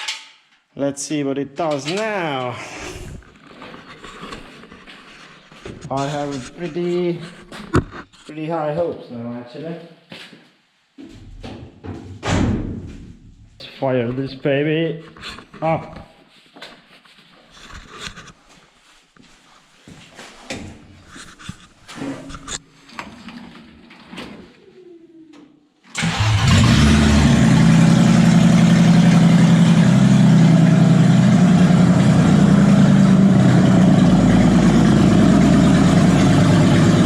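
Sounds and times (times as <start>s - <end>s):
machine engine starting and running: 26.0s - 37.0s.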